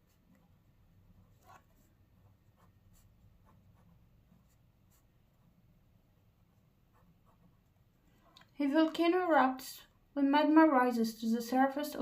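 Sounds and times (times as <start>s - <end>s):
pen scratching on paper: 0.0s - 8.4s.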